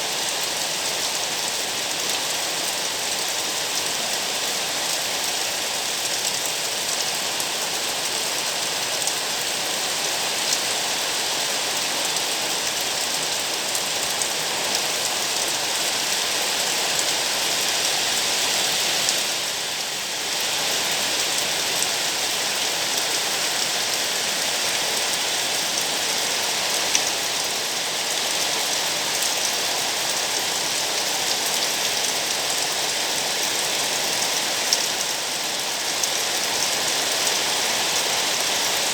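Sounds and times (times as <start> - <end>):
steady rain falling: 0.0 - 38.9.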